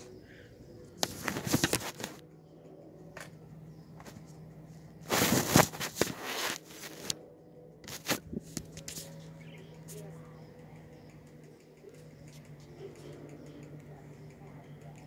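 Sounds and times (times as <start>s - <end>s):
faint steady hum: 0.0s - 15.0s
rustling and clicking of handling: 0.9s - 4.4s, 7.8s - 15.0s.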